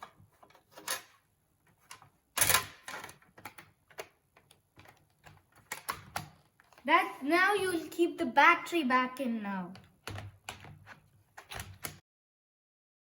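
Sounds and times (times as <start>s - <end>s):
plastic clicks and knocks: 1.7s - 6.8s, 9.7s - 12.0s.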